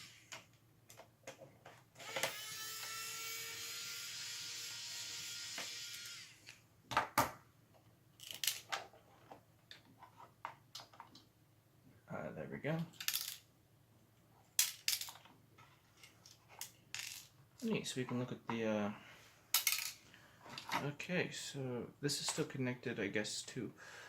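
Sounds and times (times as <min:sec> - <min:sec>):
electric screwdriver running: 0:02.0 - 0:06.5.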